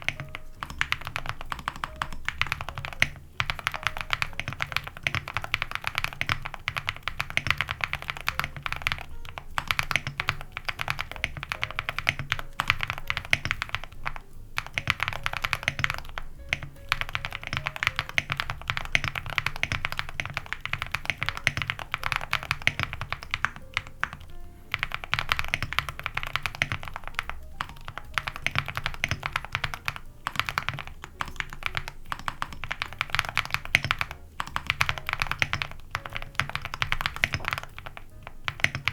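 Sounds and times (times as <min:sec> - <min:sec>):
background music: 0:00.0 - 0:38.9
fast mechanical keyboard typing: 0:00.0 - 0:38.9.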